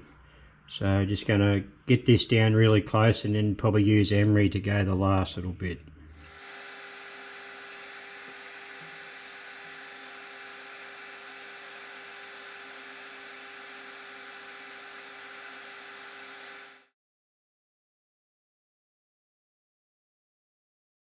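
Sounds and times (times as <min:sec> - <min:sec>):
metal lathe whine: 0:06.2 - 0:16.8.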